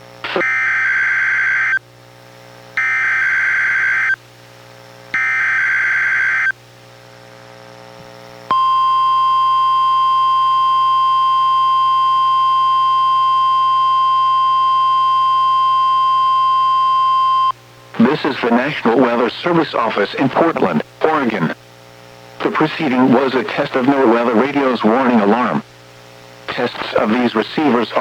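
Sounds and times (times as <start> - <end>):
steady warning alarm tone: 2.8 - 4.2, 5.2 - 6.6, 8.5 - 19.6.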